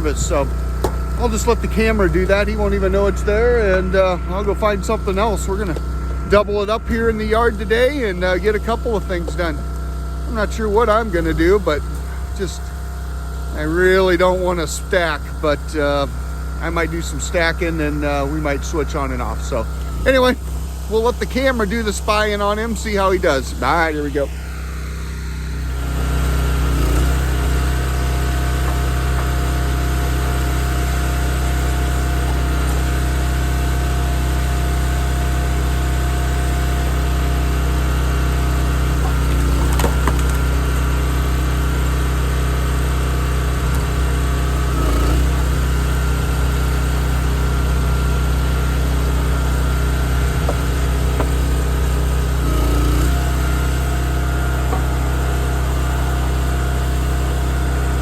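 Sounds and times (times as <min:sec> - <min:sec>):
log splitter engine running: 0:00.0 - 0:58.0
wood cracking: 0:38.7 - 0:41.0, 0:50.3 - 0:56.0.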